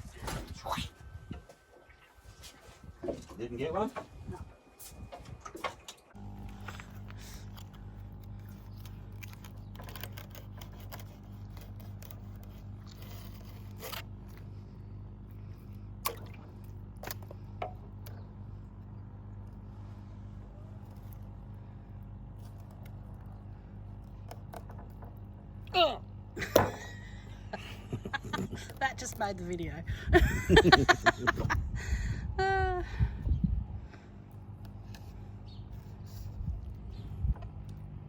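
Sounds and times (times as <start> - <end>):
low mechanical hum: 0.0 - 38.0.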